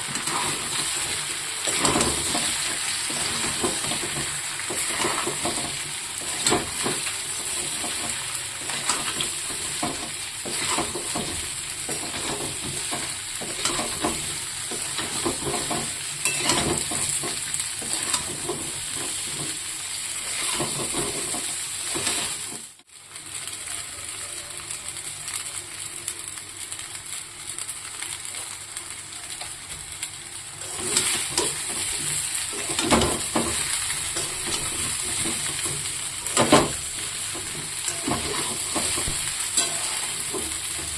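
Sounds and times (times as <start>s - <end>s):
food sizzling in a pan: 0.0s - 40.9s.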